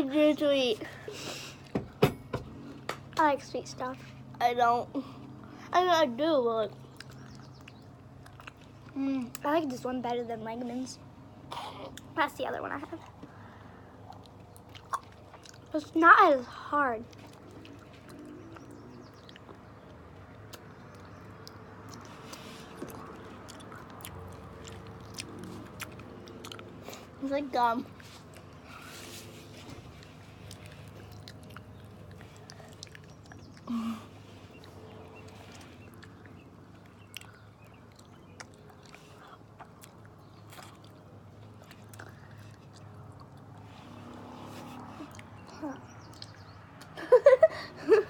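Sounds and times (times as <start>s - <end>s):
person chewing wet mouth sounds: 6.9s - 9.4s, 17.1s - 19.7s, 20.5s - 27.2s, 30.0s - 43.7s.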